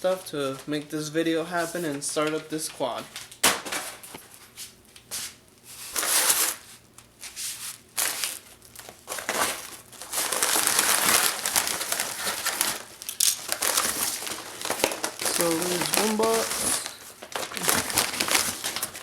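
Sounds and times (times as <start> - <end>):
packaging crinkling and rustling: 5.7 - 19.0.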